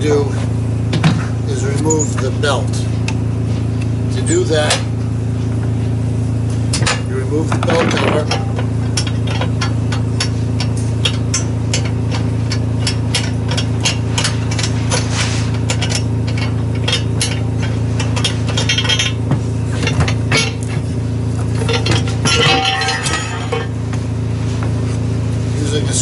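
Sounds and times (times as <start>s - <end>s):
steady low hum: 0.0s - 26.0s
tools clicking and clinking: 21.6s - 23.8s.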